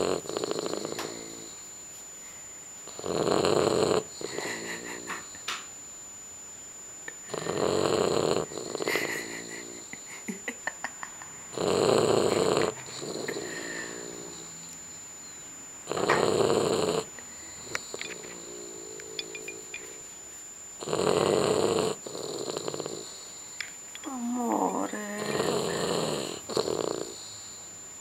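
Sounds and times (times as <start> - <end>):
pet snoring: 0.0 - 1.6, 2.8 - 5.4, 7.2 - 10.3, 11.5 - 14.8, 15.8 - 19.9, 20.8 - 23.4, 24.1 - 27.7.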